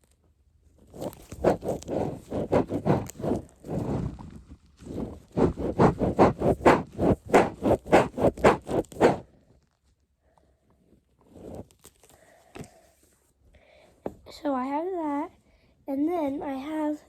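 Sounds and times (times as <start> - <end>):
squishing toy strokes: 0.8 - 9.4, 11.2 - 12.4.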